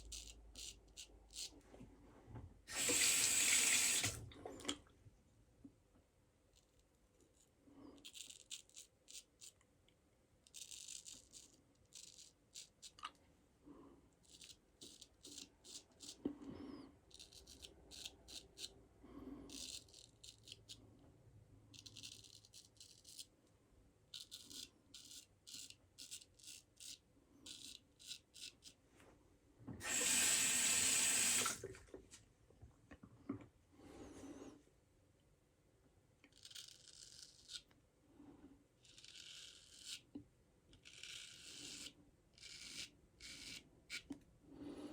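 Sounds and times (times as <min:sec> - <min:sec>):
tap running: 0:02.7 - 0:04.4, 0:29.7 - 0:31.8
straight razor scraping stubble: 0:36.3 - 0:37.7.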